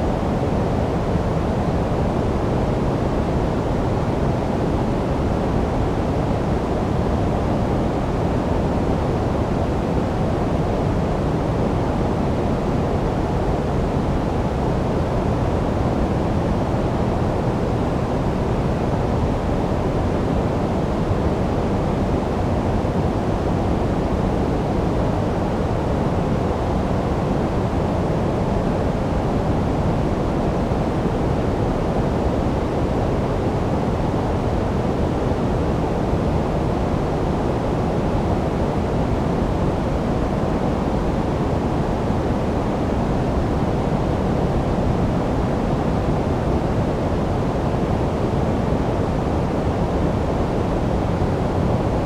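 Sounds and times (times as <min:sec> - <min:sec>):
low-weighted noise hiss: 0:00.0 - 0:52.0.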